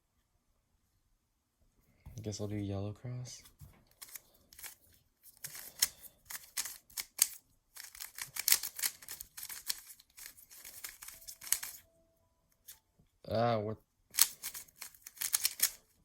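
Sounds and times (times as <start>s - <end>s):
puzzle cube layers clicking: 4.0s - 11.8s, 14.1s - 15.9s.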